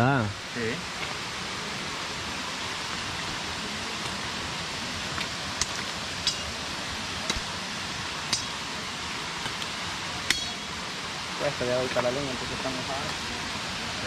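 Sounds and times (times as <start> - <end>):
rushing river and waterfall: 0.0 - 14.0.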